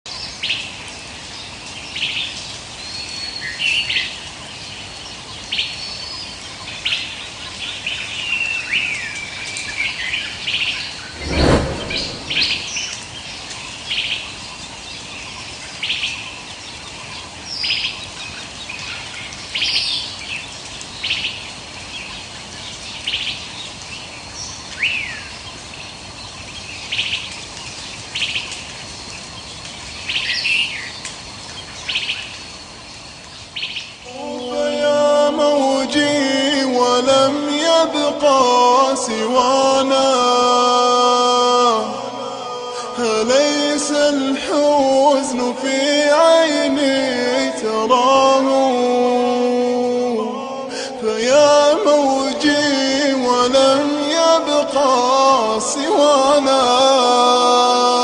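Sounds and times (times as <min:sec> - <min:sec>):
steady hiss: 0:00.3 - 0:15.7
loud low thump: 0:11.2 - 0:13.0.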